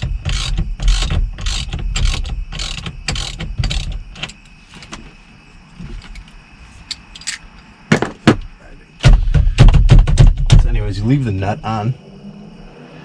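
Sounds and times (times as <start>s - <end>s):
ratchet wrench ratcheting: 0.0s - 4.4s.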